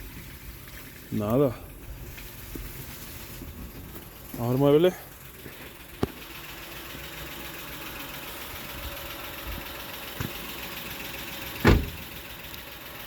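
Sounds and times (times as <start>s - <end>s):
car engine idling: 0.0s - 13.0s
suspension knock: 11.6s - 12.2s.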